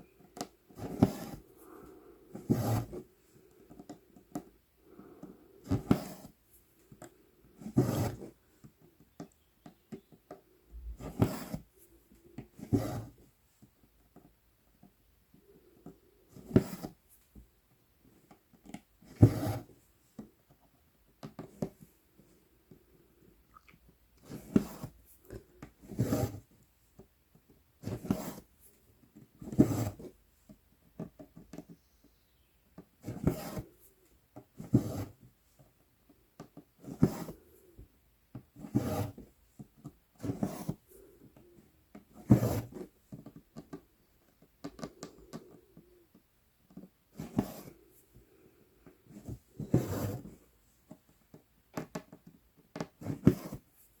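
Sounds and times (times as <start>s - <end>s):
thread rasping through fabric: 0.2s - 1.5s, 5.2s - 6.4s, 9.6s - 11.7s, 46.7s - 47.8s.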